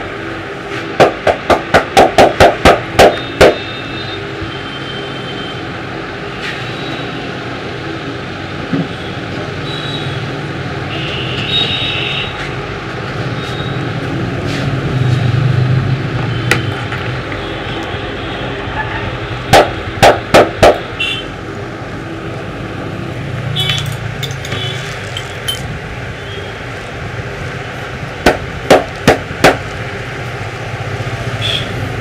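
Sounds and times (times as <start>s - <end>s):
traffic noise: 0.0s - 32.0s.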